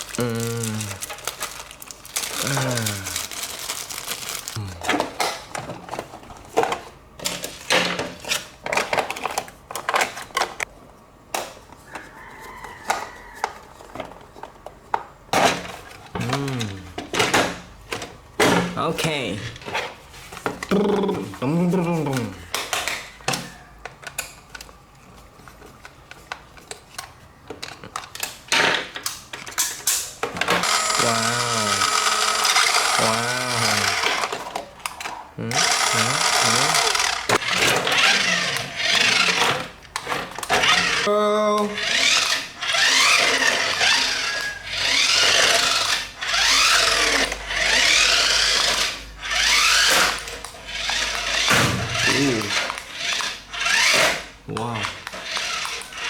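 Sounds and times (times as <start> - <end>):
toy car electric motor whining: 0.0 - 4.7, 27.6 - 56.0.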